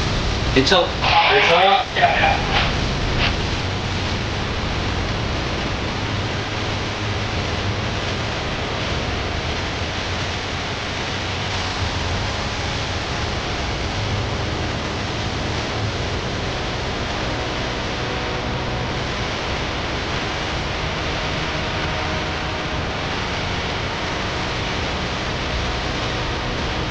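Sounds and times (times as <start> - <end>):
ship engine hum: 0.0 - 6.9.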